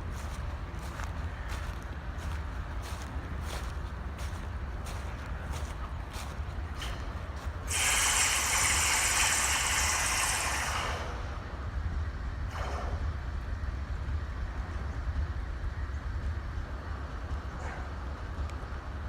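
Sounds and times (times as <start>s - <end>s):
diesel locomotives rumbling: 0.0s - 19.0s
air hiss release: 7.7s - 11.4s.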